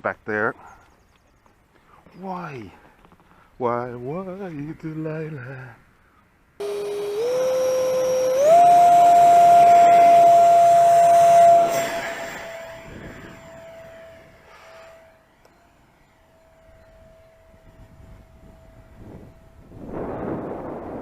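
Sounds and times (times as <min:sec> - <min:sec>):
electric ducted fan whining: 0:06.6 - 0:21.0.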